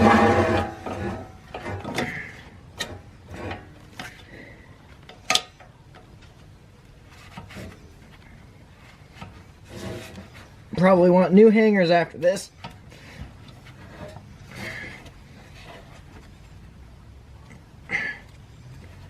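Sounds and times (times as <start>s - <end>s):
hand tools scraping metal: 0.0s - 4.2s, 9.2s - 10.5s.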